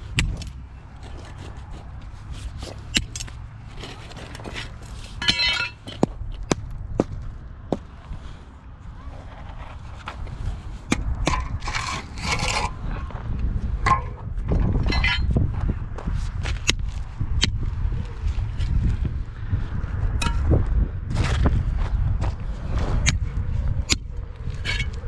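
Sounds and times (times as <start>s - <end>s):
scrapes: 0.0s - 17.1s, 24.4s - 25.0s
steady low rumble: 0.0s - 25.0s.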